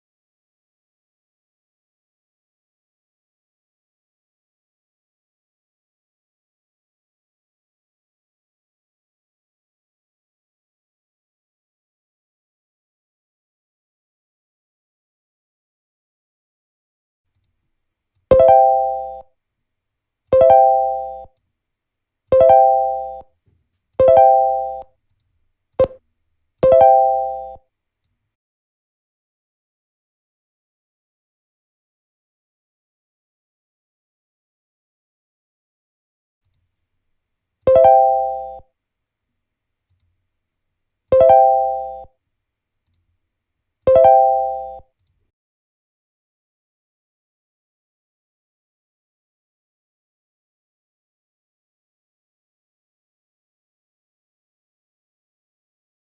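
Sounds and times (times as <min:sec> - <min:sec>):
electronic keyboard chime: 0:18.3 - 0:19.2, 0:20.4 - 0:21.3, 0:22.4 - 0:23.2, 0:24.0 - 0:24.9, 0:26.6 - 0:27.6, 0:37.7 - 0:38.6, 0:41.2 - 0:42.1, 0:43.9 - 0:44.8.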